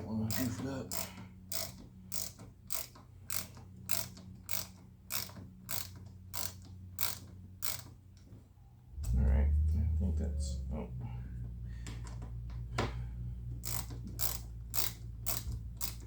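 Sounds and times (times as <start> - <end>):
ratchet clicking: 0.0 - 8.0, 13.5 - 16.0.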